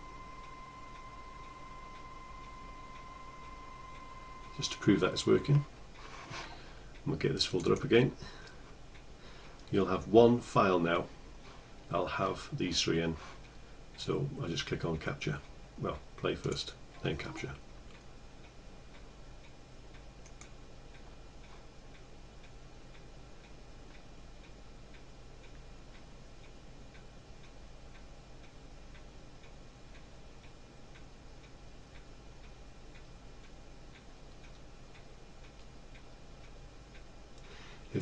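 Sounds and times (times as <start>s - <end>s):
faint steady ticking: 0.0s - 38.0s
low steady hum: 0.0s - 38.0s.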